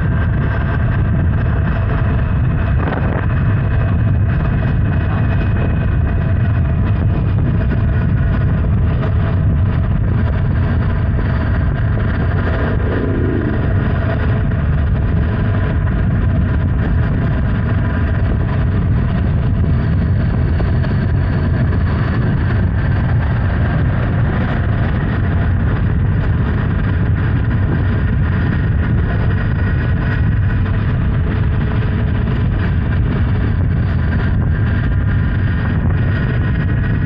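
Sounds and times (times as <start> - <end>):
wind buffeting microphone: 0.0 - 37.0
motorcycle engine cruising: 10.3 - 15.1.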